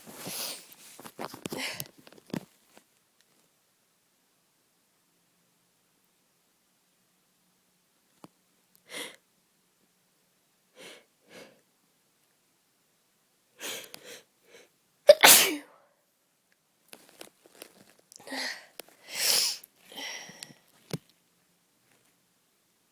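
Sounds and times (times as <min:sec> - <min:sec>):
person sneezing: 0:15.1 - 0:15.8, 0:19.1 - 0:20.2
person breathing: 0:18.2 - 0:20.7.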